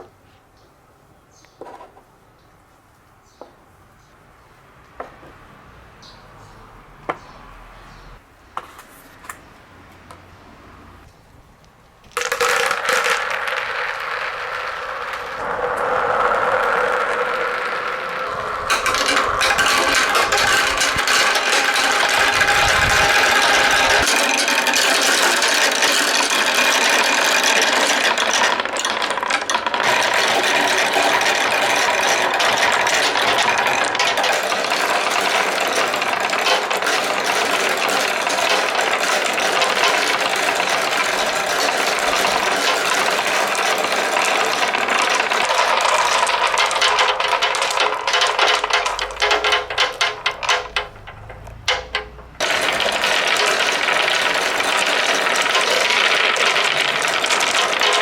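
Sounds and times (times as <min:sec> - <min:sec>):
marbles rattling on wood: 0:12.1 - 0:58.0.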